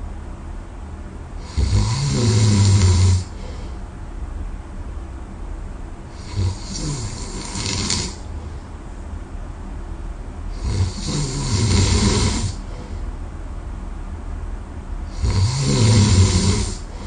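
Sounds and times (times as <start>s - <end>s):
person snoring: 1.4s - 3.6s, 6.1s - 8.3s, 10.5s - 12.7s, 15.1s - 17.0s.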